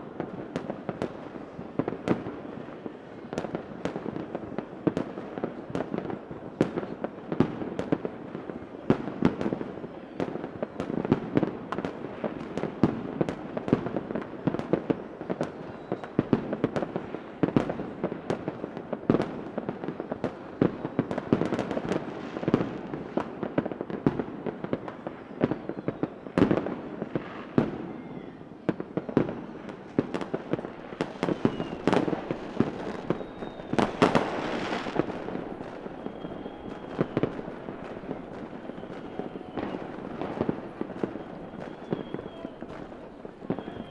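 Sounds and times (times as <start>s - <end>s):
fireworks bangs: 0.0s - 43.9s
crackle of bursting shells: 30.2s - 43.8s.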